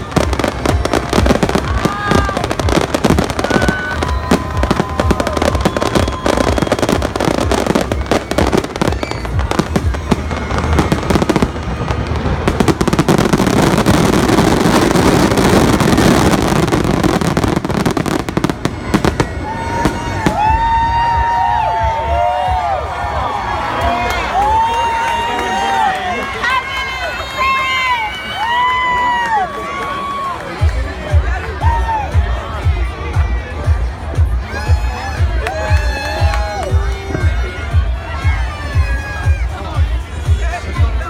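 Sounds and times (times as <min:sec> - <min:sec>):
firework whistling: 0:00.0 - 0:21.2
fireworks bangs and crackles: 0:00.0 - 0:22.5, 0:30.5 - 0:41.0
music soundtrack: 0:00.0 - 0:41.0.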